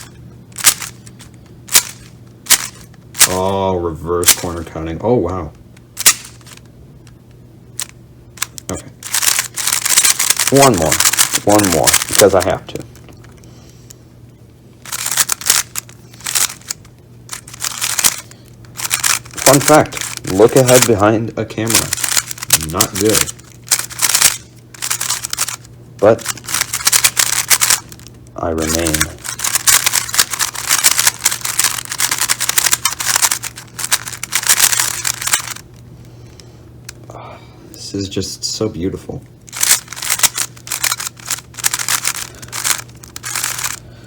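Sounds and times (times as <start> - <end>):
plastic puzzle cube clacking: 0.6 - 3.4, 6.0 - 6.6, 7.8 - 13.1, 14.9 - 21.0, 21.6 - 35.6, 39.5 - 43.8
speedcube layers clicking: 0.6 - 3.4, 6.0 - 6.6, 7.8 - 12.6, 14.9 - 21.0, 21.6 - 35.6, 39.5 - 43.8.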